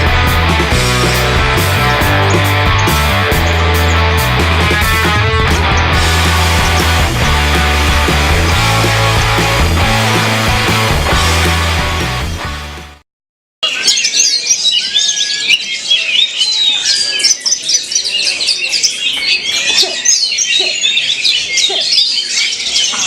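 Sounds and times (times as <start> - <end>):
birds chirping and trilling: 0.0 - 12.7, 13.6 - 23.0
rock music: 0.0 - 13.0.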